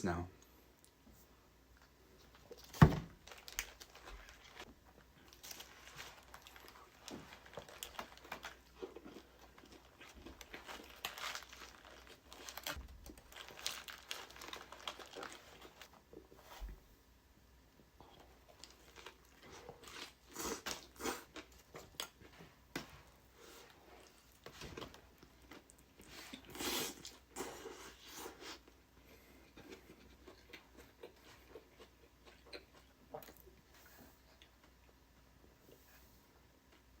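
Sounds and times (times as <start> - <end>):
food packaging crinkling: 2.2 - 16.0, 18.5 - 22.2
person eating: 18.9 - 22.1, 25.4 - 28.7, 29.4 - 34.5.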